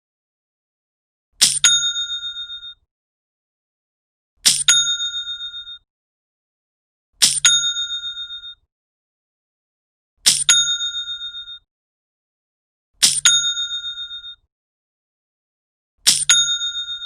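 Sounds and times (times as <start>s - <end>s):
cash register bell sound effect: 1.4s - 2.8s, 4.5s - 5.8s, 7.2s - 8.6s, 10.3s - 11.6s, 13.0s - 14.4s, 16.1s - 17.0s.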